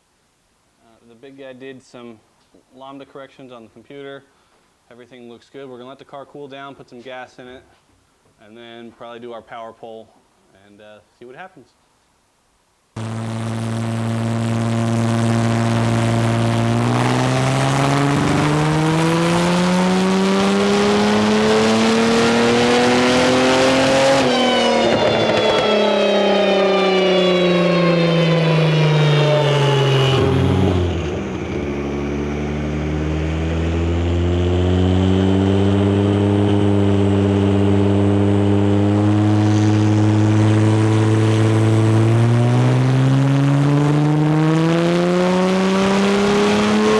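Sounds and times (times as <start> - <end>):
car engine revving under load: 13.0 - 46.9.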